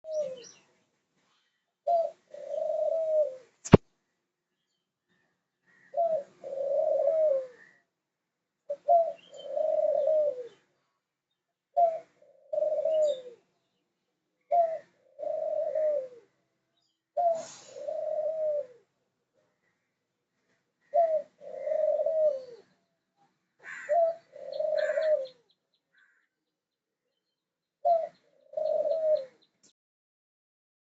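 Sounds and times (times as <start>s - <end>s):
dove cooing: 0.0s - 0.6s, 1.8s - 3.6s, 5.7s - 7.8s, 8.7s - 10.7s, 11.7s - 13.5s, 14.4s - 16.4s, 17.2s - 18.9s, 20.8s - 22.7s, 23.6s - 26.2s, 27.8s - 29.5s.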